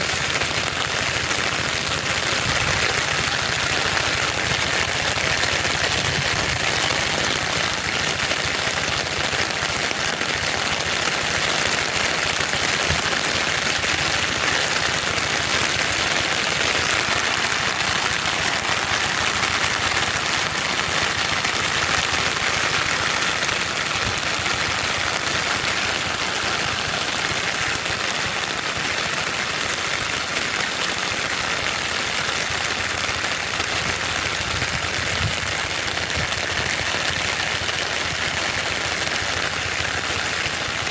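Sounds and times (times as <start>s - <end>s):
heavy rain falling: 0.0s - 40.9s.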